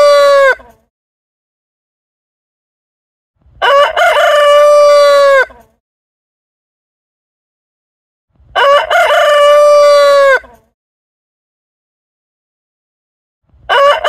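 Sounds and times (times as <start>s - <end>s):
rooster crowing: 0.0s - 0.6s, 3.6s - 5.6s, 8.6s - 10.6s, 13.7s - 14.0s.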